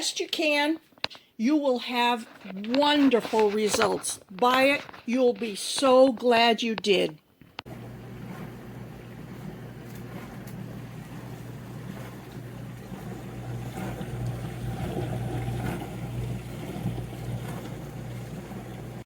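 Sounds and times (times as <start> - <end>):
dishwasher motor hum: 7.7 - 19.0
water spraying: 7.7 - 19.0.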